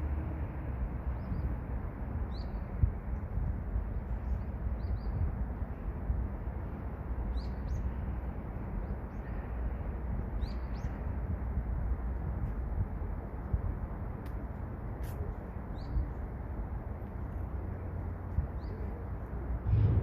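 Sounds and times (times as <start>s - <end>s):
steady low rushing noise: 19.6s - 20.0s.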